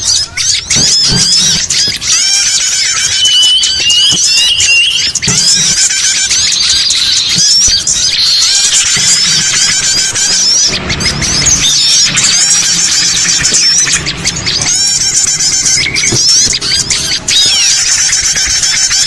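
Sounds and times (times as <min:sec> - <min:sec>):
songbirds chirping and twittering: 0:00.0 - 0:19.0.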